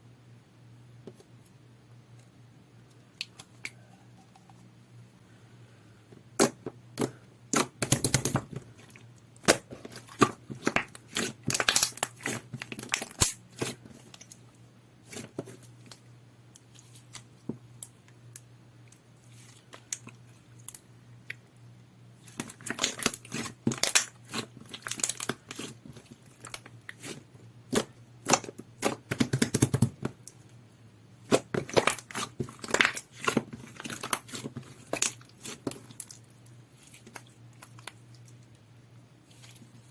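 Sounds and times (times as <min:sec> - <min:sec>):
slime squished by hand: 0:07.5 - 0:14.3.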